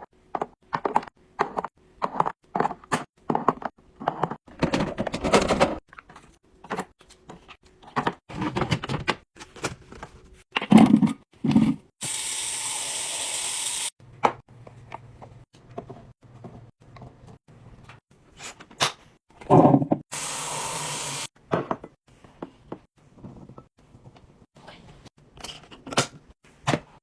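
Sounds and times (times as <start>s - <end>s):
containers clunking and rattling: 0.4s - 11.9s.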